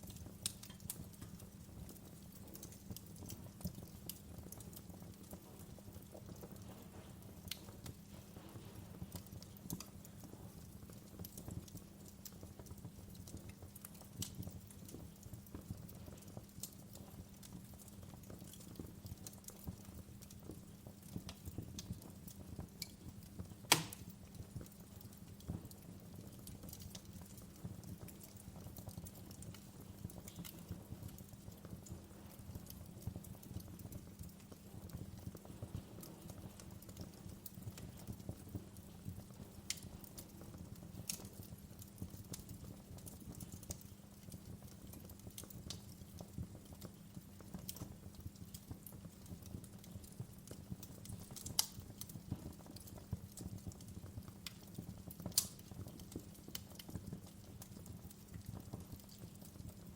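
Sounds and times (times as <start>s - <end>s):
low steady fire rumble: 0.0s - 59.9s
wood fire crackling: 0.0s - 59.9s.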